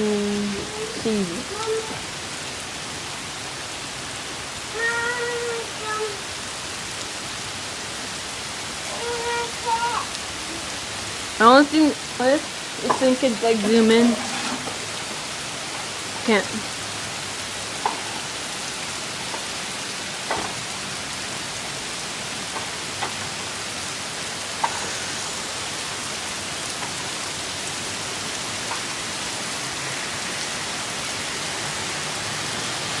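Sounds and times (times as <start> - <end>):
heavy rain hissing: 0.0 - 33.0.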